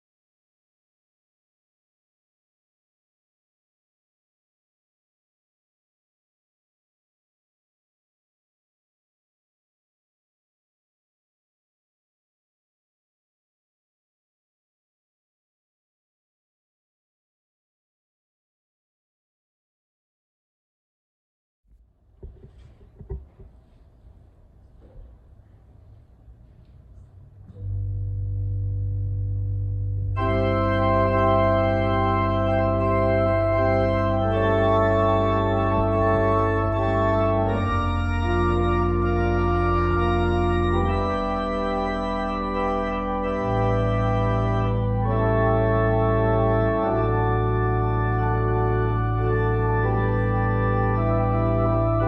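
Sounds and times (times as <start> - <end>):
organ playing slow chords: 26.4 - 52.0.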